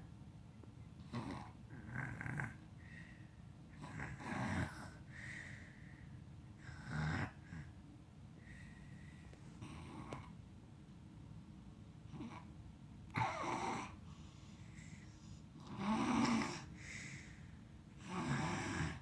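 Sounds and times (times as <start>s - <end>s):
person snoring: 18.0s - 19.0s.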